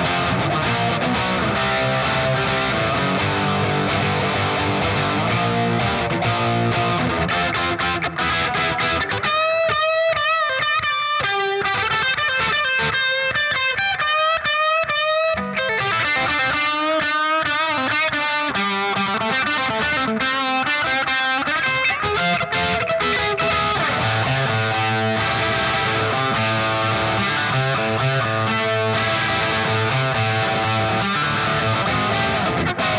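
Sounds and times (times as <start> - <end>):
overdriven electric guitar: 0.0 - 32.9.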